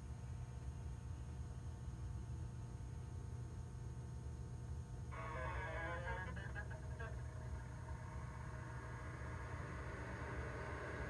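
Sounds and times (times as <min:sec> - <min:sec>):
inverter charger humming: 0:05.1 - 0:11.0.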